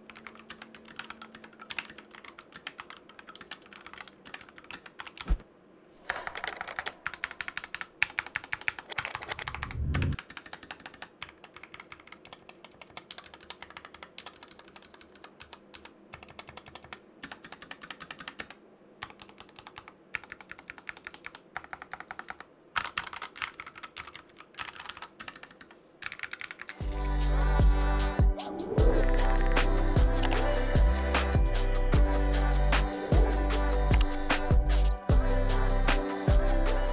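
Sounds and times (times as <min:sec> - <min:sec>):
mechanical keyboard keys clacking: 0:00.0 - 0:05.4, 0:06.1 - 0:26.9
deep keyboard thump: 0:05.2 - 0:05.4.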